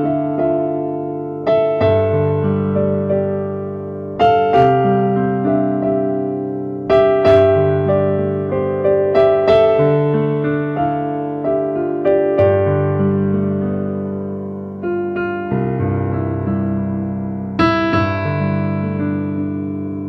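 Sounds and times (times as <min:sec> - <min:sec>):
slow piano-like keyboard chords: 0:00.0 - 0:20.0.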